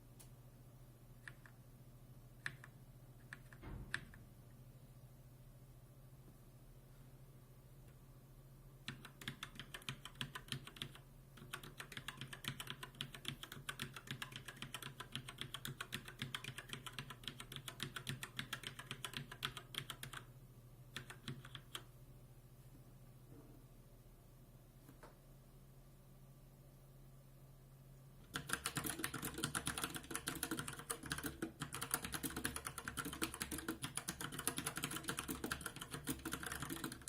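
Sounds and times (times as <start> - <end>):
typing on mechanical keyboard: 2.4 - 4.2, 8.8 - 20.3, 21.0 - 21.9, 28.2 - 37.0.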